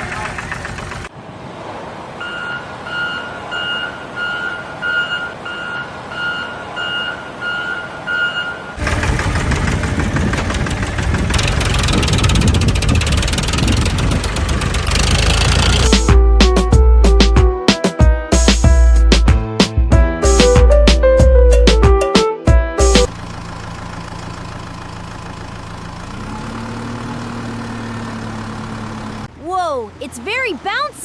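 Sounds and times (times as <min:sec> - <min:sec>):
low engine rumble: 0:00.0 - 0:01.1, 0:08.8 - 0:17.3, 0:22.6 - 0:31.0
reversing alarm beeping: 0:02.2 - 0:08.8
loud dense clattering: 0:08.8 - 0:16.1.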